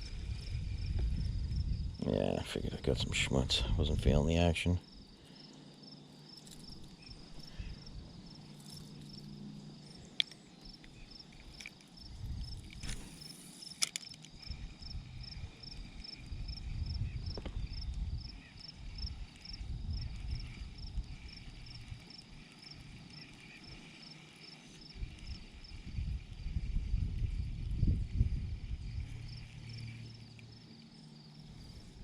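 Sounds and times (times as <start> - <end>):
faint low rumble: 0.0 - 4.8
insect chirping: 0.0 - 32.0.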